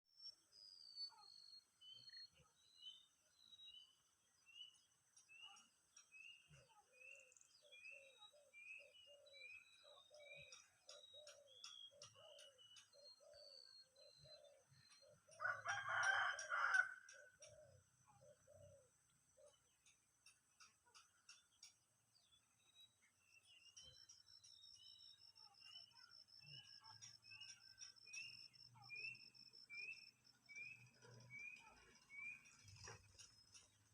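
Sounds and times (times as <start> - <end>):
high bird chirp: 20.6 - 33.9.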